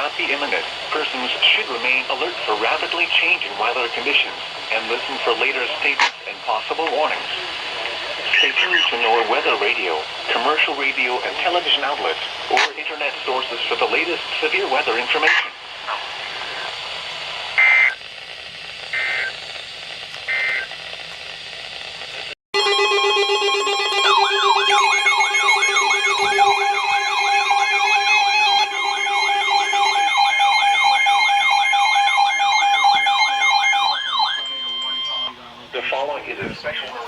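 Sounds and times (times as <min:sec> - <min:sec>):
radio static hiss: 0:00.0 - 0:22.4, 0:24.1 - 0:37.0
warbling emergency alert tone: 0:22.6 - 0:35.4.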